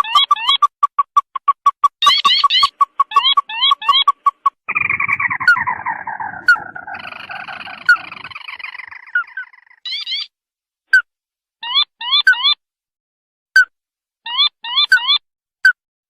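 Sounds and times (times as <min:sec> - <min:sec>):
chattering trill: 0:02.0 - 0:10.3
crake calling: 0:02.0 - 0:10.3.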